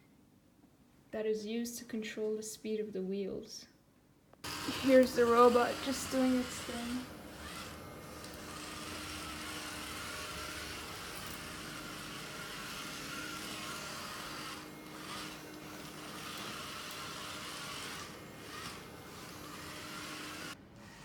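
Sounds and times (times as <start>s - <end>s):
small motors whirring: 4.4s - 21.0s.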